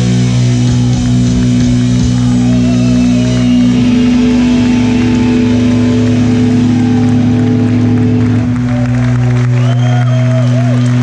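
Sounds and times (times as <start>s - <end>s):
drumming: 0.0s - 9.7s
crowd cheering and shouting: 0.0s - 11.0s
distorted guitar and bass chord: 0.0s - 11.0s.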